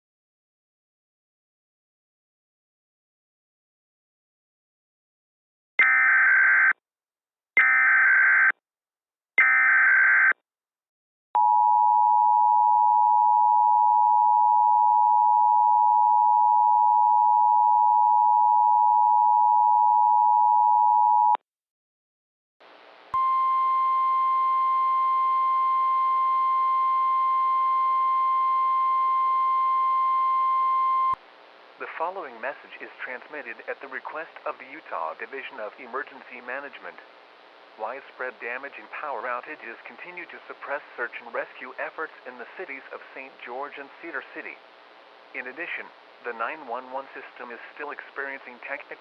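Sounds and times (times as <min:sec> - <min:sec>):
radio hiss: 0:31.2 - 0:49.0.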